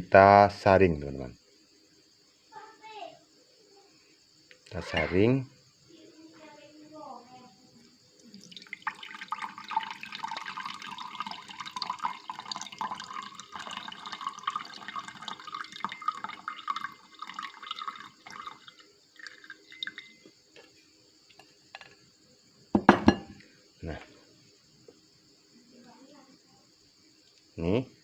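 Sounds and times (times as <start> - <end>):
liquid trickling and dripping: 8.1 - 20.6
liquid pouring through strainer: 8.2 - 20.2.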